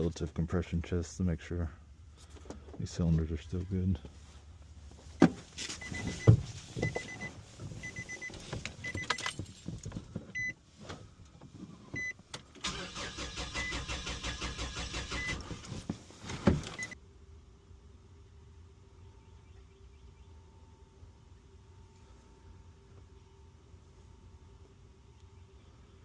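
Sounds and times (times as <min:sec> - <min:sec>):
vehicle warning chime beeping: 0:05.8 - 0:09.4, 0:10.4 - 0:10.6, 0:12.0 - 0:12.2, 0:13.6 - 0:13.9, 0:15.1 - 0:15.4, 0:16.7 - 0:17.0
engine cranking on starter: 0:12.4 - 0:15.9.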